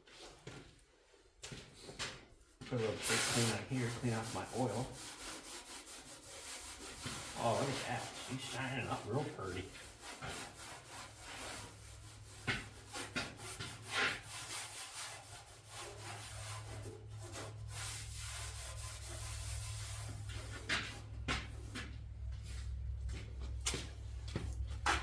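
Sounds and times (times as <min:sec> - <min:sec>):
rag wiping metal: 0:03.0 - 0:21.9.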